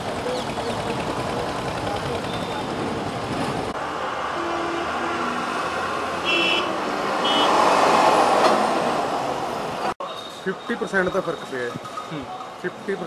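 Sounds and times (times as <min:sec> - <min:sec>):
road traffic: 0:00.0 - 0:13.0
vehicle passing: 0:01.3 - 0:09.9
high horn beeps: 0:04.3 - 0:05.4, 0:06.2 - 0:07.6.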